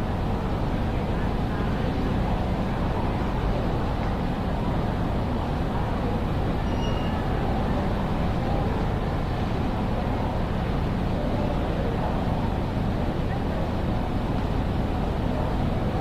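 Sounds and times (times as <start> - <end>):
murmur of crowd voices: 0.0 - 16.0
faint short beep: 6.6 - 7.2.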